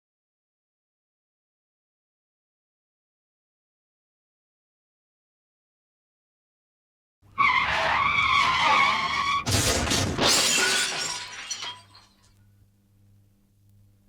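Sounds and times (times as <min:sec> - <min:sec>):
car tyres screeching: 0:07.3 - 0:10.2
car crash: 0:07.4 - 0:12.2
debris tinkling: 0:08.5 - 0:12.3
glass shattering: 0:08.6 - 0:12.2.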